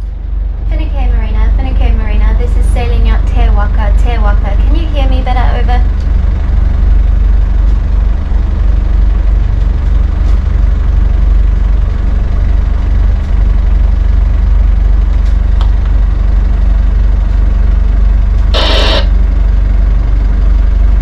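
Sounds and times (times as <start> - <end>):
boat engine droning: 18.5 - 19.5.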